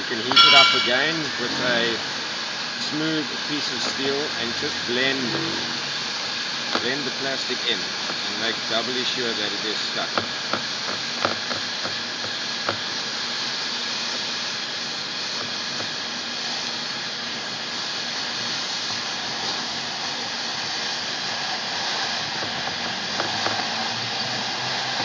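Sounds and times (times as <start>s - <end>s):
hot-air welding gun blowing: 0.0s - 25.0s.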